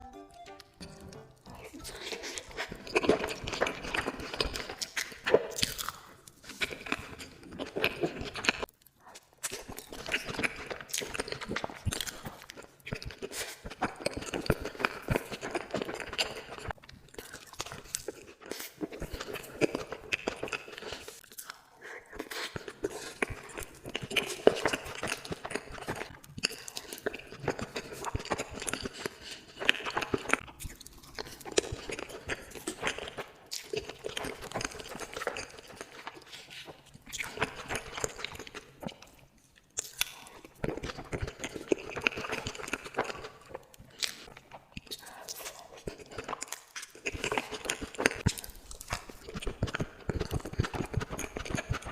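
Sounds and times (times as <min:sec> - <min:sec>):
crunching and chewing sweets: 0:00.0 - 0:51.9.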